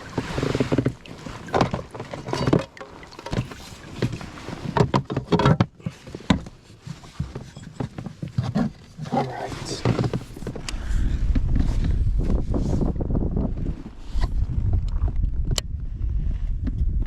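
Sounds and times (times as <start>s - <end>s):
water sounds: 0.0s - 11.6s
knocks and bumps on kayak: 0.0s - 13.8s.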